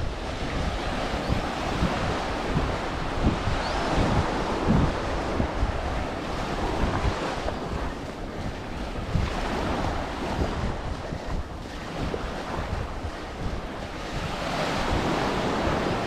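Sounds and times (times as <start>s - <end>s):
surf breaking on beach: 0.0s - 16.0s
wind buffeting microphone: 0.0s - 16.0s.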